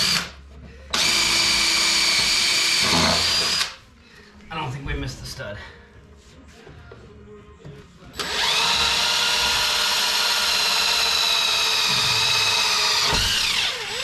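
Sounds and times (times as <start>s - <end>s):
power drill boring through wall: 0.0s - 3.8s, 8.2s - 14.0s.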